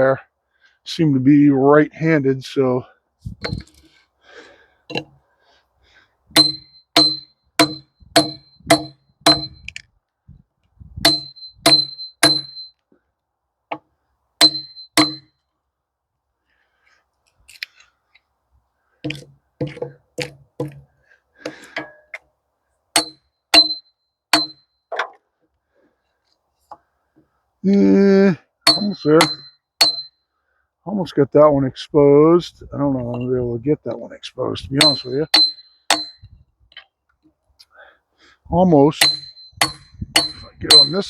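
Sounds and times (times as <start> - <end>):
hatchet chopping log: 6.4 - 9.6, 11.0 - 12.6, 14.4 - 15.3, 19.1 - 22.0, 23.0 - 25.2, 28.7 - 30.1, 39.0 - 41.0.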